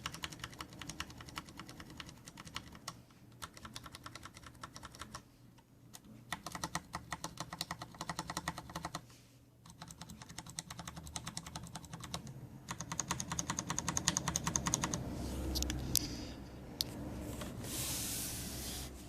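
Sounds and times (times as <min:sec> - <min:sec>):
mechanical keyboard typing: 0:00.0 - 0:05.2, 0:05.9 - 0:09.0, 0:09.6 - 0:15.1.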